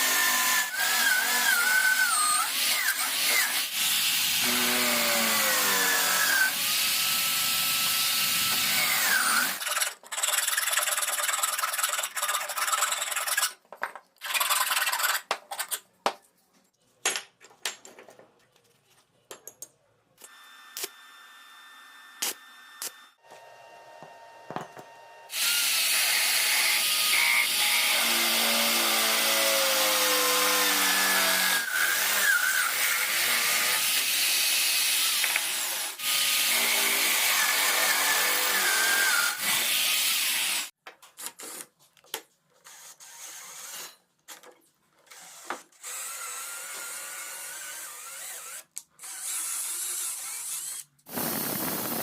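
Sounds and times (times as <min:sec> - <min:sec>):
power tool cutting wood: 0:00.0 - 0:09.9, 0:20.3 - 0:40.8.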